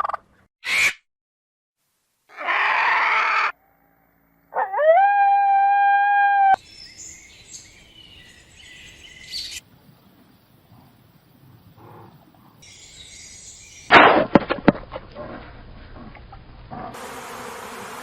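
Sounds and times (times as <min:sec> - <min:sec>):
harsh animal call: 0:02.3 - 0:03.6
long animal howl: 0:02.4 - 0:06.6
faint high bird chirps: 0:06.5 - 0:09.6, 0:12.6 - 0:13.9.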